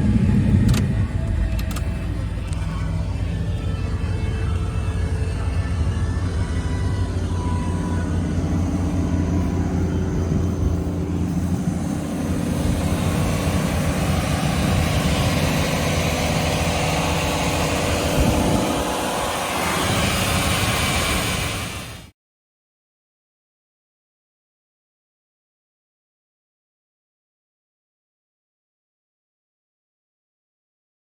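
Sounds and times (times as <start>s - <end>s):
pickup truck engine running: 0.0s - 22.1s.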